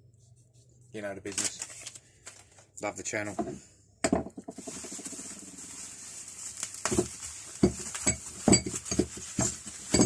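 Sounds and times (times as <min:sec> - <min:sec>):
items knocking and clinking: 0:03.4 - 0:05.2, 0:06.8 - 0:10.0
packaging crackling: 0:04.6 - 0:10.0.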